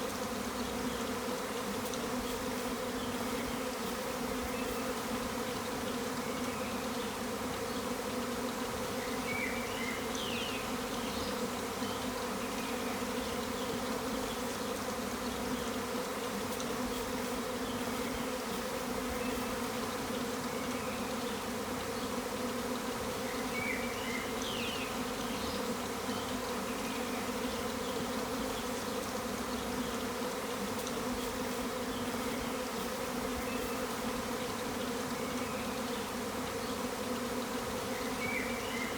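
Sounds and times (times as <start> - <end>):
bee swarm buzzing: 0.0 - 38.9.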